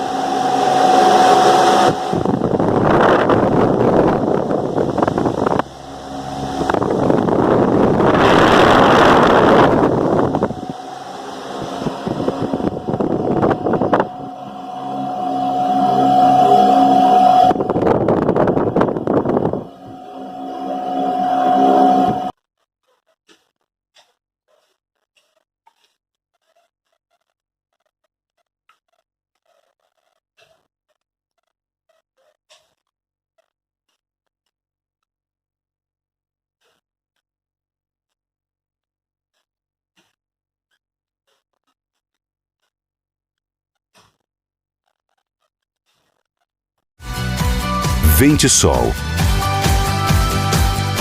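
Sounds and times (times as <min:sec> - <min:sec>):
fan airflow rushing: 0:00.0 - 0:20.2
fan motor hum: 0:00.0 - 0:22.3.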